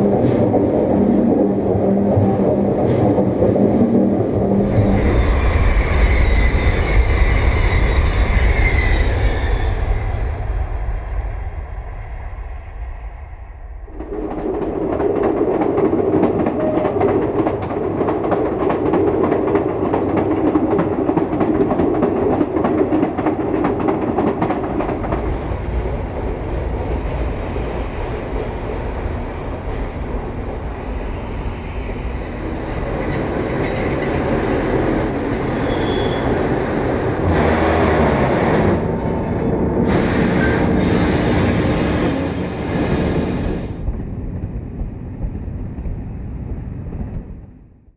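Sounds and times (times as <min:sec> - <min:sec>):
train rumbling on rails: 0:00.0 - 0:47.9.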